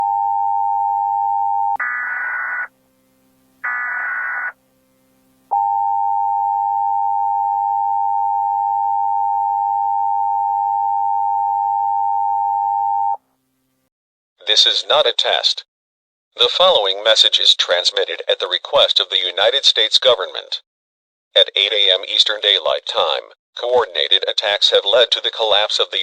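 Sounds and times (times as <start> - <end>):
digital data bursts: 1.8 - 2.7, 3.6 - 4.6.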